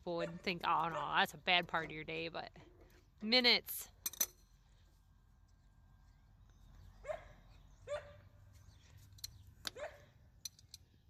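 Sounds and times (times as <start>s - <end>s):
faint dog barking: 7.0s - 8.3s, 9.8s - 10.1s.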